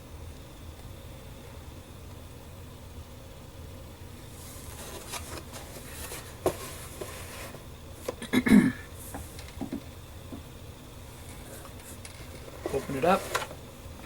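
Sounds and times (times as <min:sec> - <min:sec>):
hands rubbing cardboard box: 0:04.4 - 0:07.6, 0:12.5 - 0:13.5.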